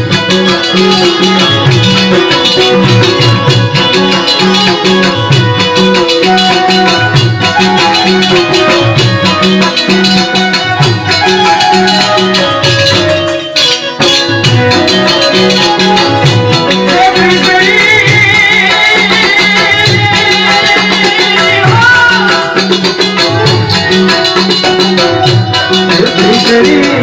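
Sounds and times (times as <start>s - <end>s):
music with steady beat: 0.0s - 27.0s
rattling percussion: 0.0s - 27.0s
wavering high melody: 0.4s - 27.0s.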